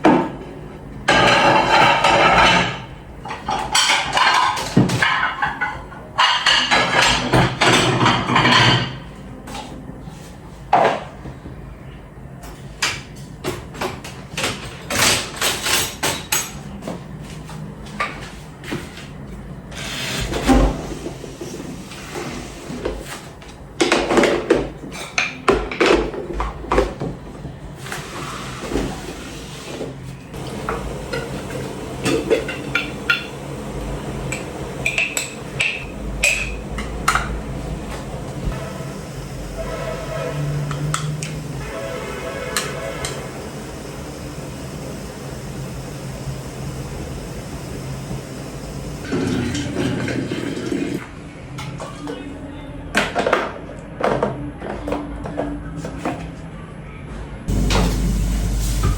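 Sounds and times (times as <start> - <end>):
dishes and utensils clattering: 0.0 - 9.8, 12.5 - 16.8, 23.8 - 27.2, 27.9 - 33.6, 34.2 - 41.7.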